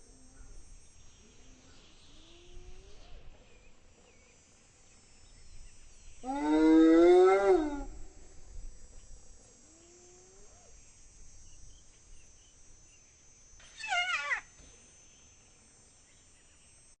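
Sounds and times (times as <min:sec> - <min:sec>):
hyena calling: 0:13.7 - 0:14.5.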